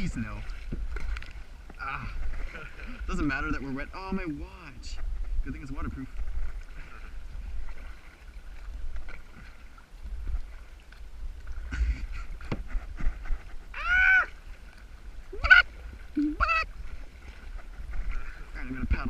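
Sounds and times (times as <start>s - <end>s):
paddle strokes: 0.0s - 19.0s
water splashing against hull: 0.0s - 19.0s
wind rumble on microphone: 0.0s - 19.0s.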